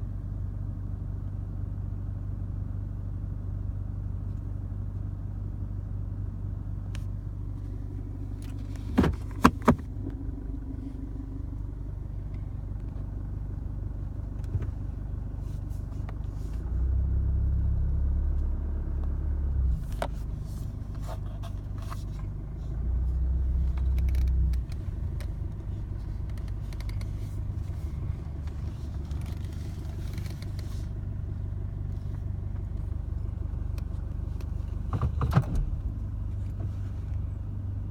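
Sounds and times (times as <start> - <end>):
diesel engine idling roughly: 5.5 - 16.8, 19.8 - 34.9.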